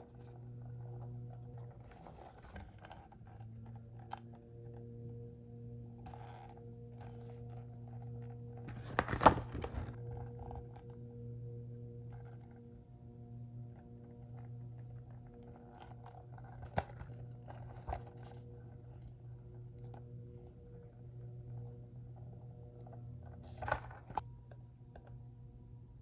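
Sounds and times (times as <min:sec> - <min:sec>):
low electrical hum: 0:00.0 - 0:26.0
packaging rustling and crackling: 0:08.7 - 0:10.0.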